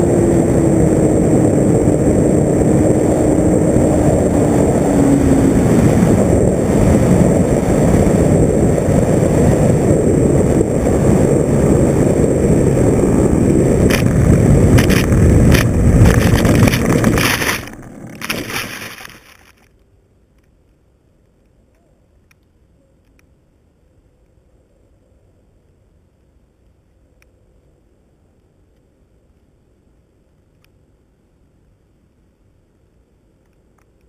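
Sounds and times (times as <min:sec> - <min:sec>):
wind rush: 0:00.0 - 0:19.5
propeller motor noise: 0:00.0 - 0:19.7.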